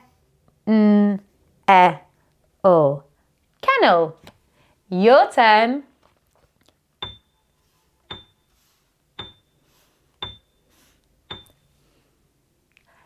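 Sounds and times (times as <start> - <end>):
sharp ticks with high ring: 7.0 - 7.3, 8.1 - 8.4, 9.2 - 9.5, 11.3 - 11.6.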